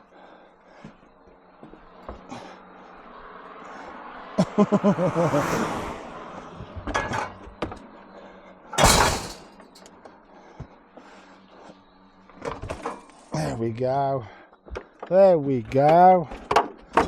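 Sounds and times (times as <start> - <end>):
loud metal clunk: 8.8 - 9.6.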